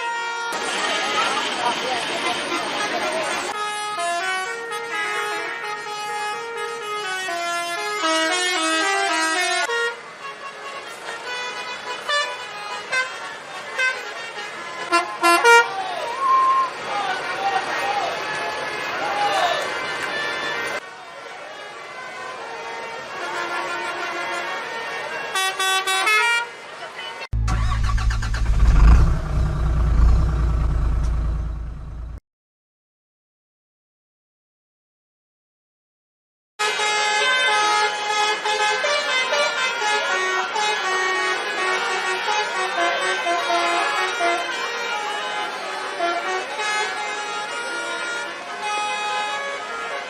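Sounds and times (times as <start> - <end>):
musical air horn tune: 14.9 - 15.7
bus diesel engine passing: 27.4 - 32.2
short horn blast: 27.4 - 32.2.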